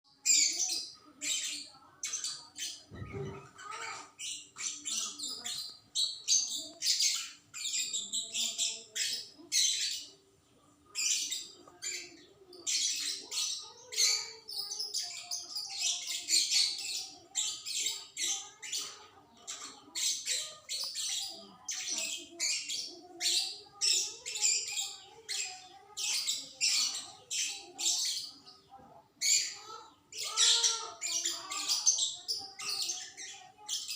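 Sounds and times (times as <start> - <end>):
songbird chirping and twittering: 0.1 - 33.9.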